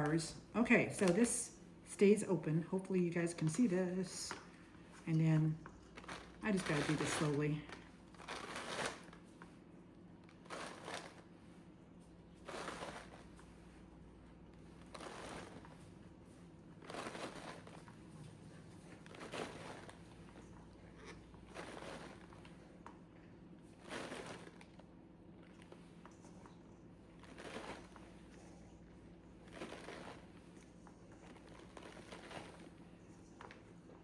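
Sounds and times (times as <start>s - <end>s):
plastic bag crinkling: 5.1s - 9.6s, 10.2s - 11.4s, 12.4s - 13.4s, 14.7s - 16.0s, 16.8s - 18.2s, 18.8s - 22.8s, 23.7s - 24.9s, 27.2s - 28.4s, 29.3s - 33.6s.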